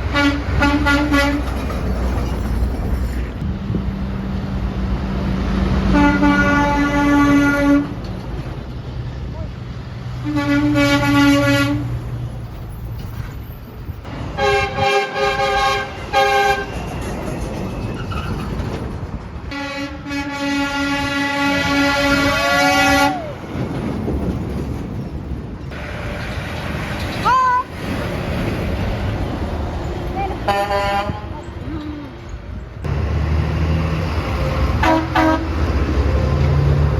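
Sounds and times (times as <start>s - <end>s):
truck air horn blasts: 0.0s - 1.4s, 5.9s - 8.0s, 10.2s - 11.9s, 14.4s - 16.7s, 19.5s - 23.3s, 30.4s - 31.3s, 34.8s - 35.7s
road traffic hissing: 0.0s - 36.9s.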